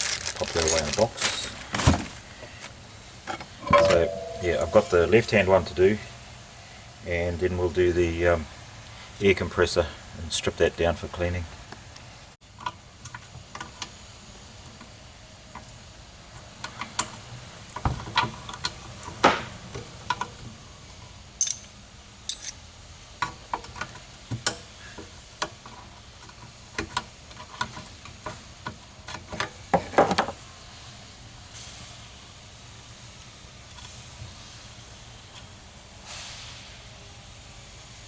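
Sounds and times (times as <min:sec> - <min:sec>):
metal tools and parts clinking: 0:00.0 - 0:01.5, 0:03.6 - 0:06.0, 0:21.4 - 0:22.6
metal parts rattling: 0:00.0 - 0:01.6, 0:22.3 - 0:22.6.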